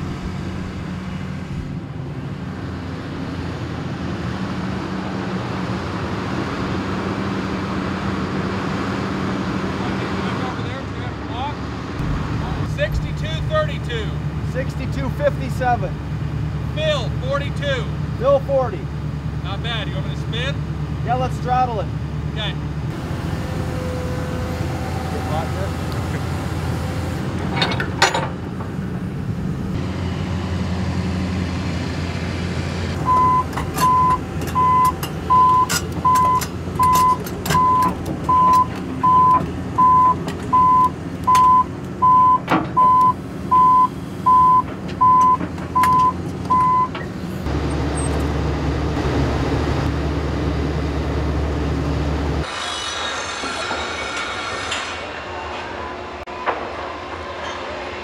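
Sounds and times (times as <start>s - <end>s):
heavy machine engine running: 0.0s - 52.6s
backup alarm beeping: 33.0s - 47.0s.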